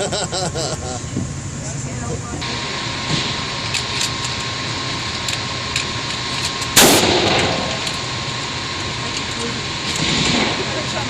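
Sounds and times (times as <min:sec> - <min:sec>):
loud close gunshot: 0:06.8 - 0:07.9, 0:10.0 - 0:10.9
faint distant gunshots: 0:06.8 - 0:08.1.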